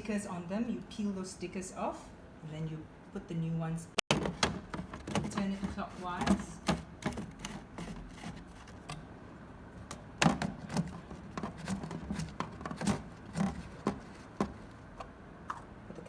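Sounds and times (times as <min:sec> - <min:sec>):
plastic clicks and knocks: 0:04.0 - 0:09.0, 0:09.8 - 0:14.7.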